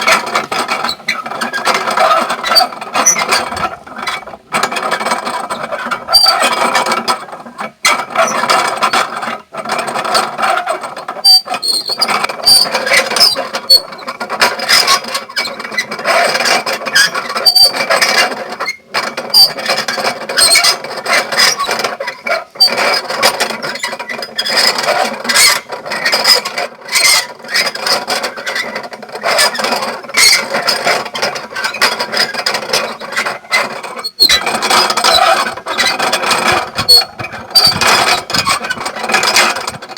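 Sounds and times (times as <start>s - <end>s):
high squeaks: 0.0s - 4.3s, 11.3s - 14.0s, 31.6s - 39.7s
mill gears and rollers clattering: 0.0s - 39.9s.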